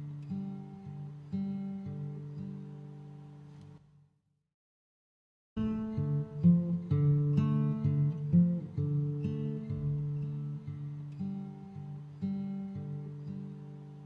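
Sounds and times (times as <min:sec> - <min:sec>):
acoustic guitar playing: 0:00.0 - 0:03.8, 0:05.6 - 0:14.0.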